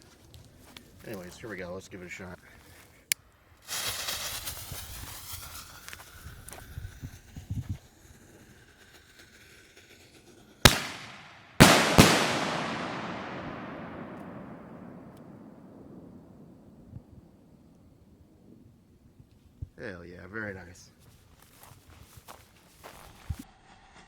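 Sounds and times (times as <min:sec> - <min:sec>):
firework mortar launch bang: 0:10.7 - 0:16.7.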